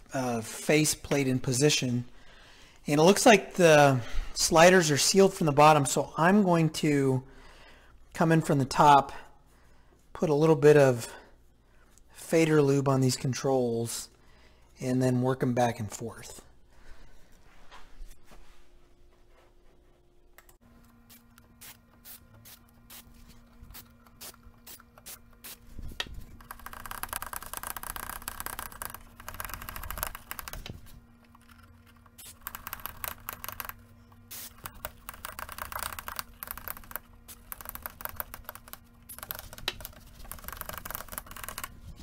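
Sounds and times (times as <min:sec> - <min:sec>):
sliders clicking and scraping: 0:20.4 - 0:42.0
aerosol spray hissing: 0:34.3 - 0:34.7.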